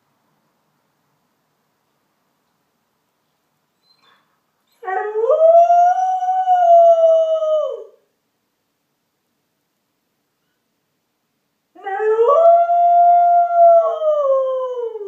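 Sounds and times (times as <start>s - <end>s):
dog howling: 11.8s - 15.0s.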